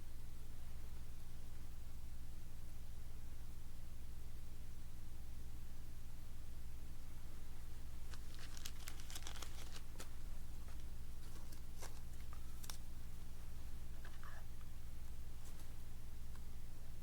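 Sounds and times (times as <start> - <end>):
steady low hum: 0.0 - 17.0
light crackles: 8.0 - 16.5
packaging crinkling: 8.1 - 10.1.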